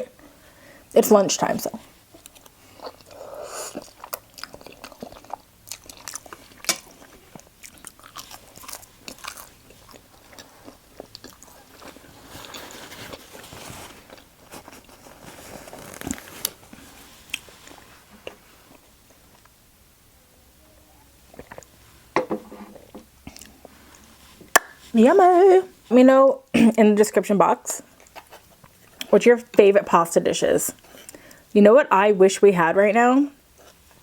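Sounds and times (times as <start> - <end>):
mouth clicks and crunches: 2.1 - 13.3, 21.3 - 21.8
person biting and chewing: 2.2 - 12.0.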